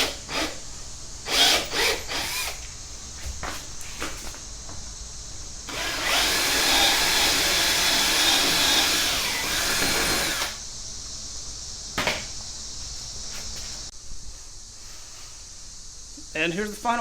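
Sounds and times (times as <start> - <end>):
power drill running: 0.0 - 0.6, 1.2 - 2.6, 5.7 - 10.6.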